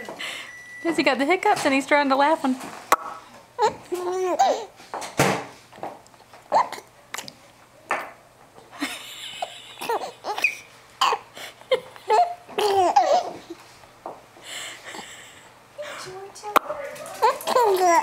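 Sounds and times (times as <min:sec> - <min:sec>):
small child hiccupping: 0:06.5 - 0:07.3
child giggling: 0:08.8 - 0:13.6, 0:17.2 - 0:18.0.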